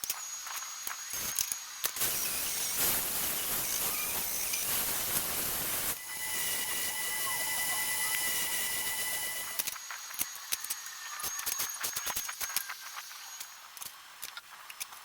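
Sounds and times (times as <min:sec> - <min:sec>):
loud steady hissing: 0:02.0 - 0:09.7
steady high tone: 0:05.9 - 0:09.8.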